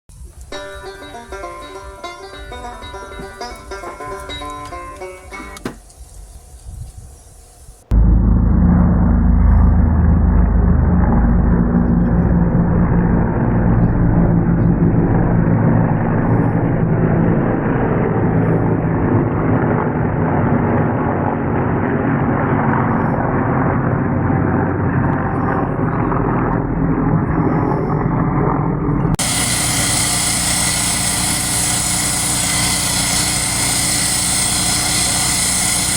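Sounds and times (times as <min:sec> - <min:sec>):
vehicle engine running: 0:07.9 - 0:35.9.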